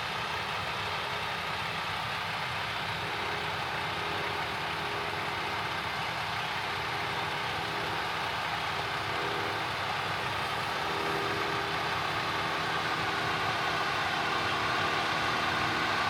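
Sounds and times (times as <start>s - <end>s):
farm machinery engine humming: 0.0s - 16.0s.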